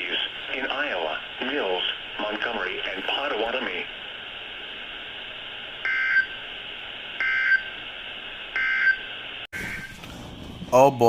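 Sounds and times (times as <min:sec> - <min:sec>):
radio hiss: 0:00.0 - 0:04.9.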